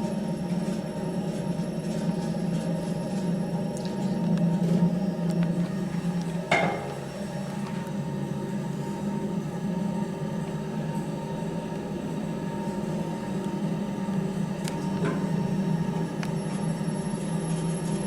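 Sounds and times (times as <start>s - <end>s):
lift car humming: 3.9s - 18.0s.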